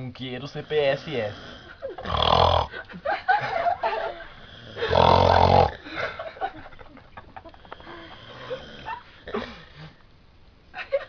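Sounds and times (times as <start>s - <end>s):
quiet breathing: 0.2s - 10.2s
man snoring loudly: 0.7s - 2.8s, 4.4s - 5.8s, 8.1s - 9.5s.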